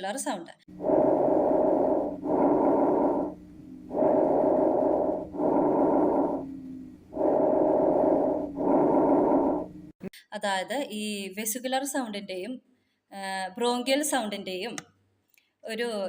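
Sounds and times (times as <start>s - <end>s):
breath sounds through stethoscope: 0.8s - 9.8s.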